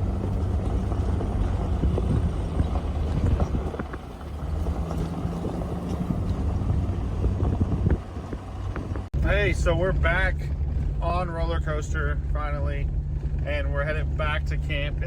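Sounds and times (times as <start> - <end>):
knocks and rattles: 0.0 - 9.1
car engine running: 0.0 - 15.0
tyre and road noise: 0.0 - 15.0.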